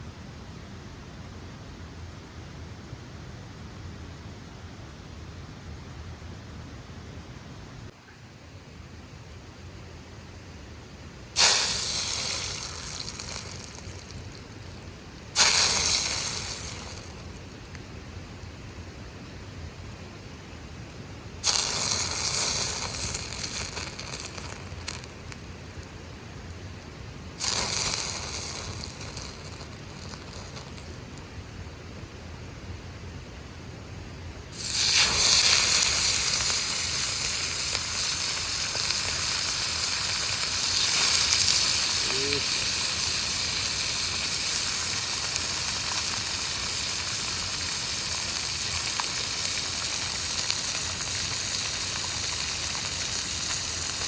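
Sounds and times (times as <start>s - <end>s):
food sizzling in hot oil: 11.4s - 17.9s, 21.4s - 26.6s, 27.4s - 31.2s, 34.5s - 54.0s.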